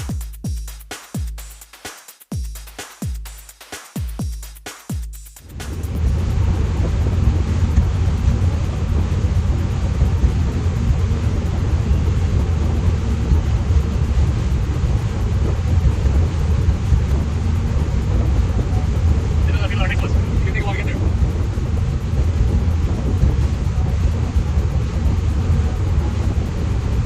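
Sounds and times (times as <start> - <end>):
boat engine drone: 5.4 - 27.0
rush of wind and water: 5.4 - 27.0.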